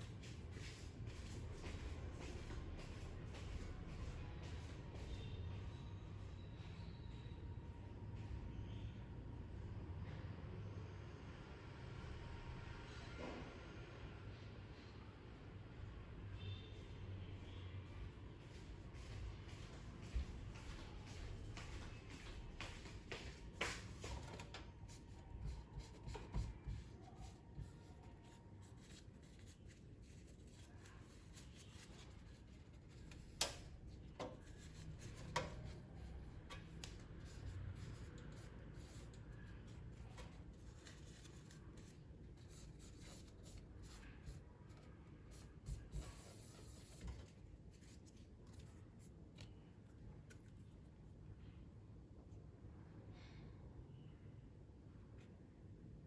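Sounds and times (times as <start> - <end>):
faint handling clicks and knocks: 31.8 - 44.0.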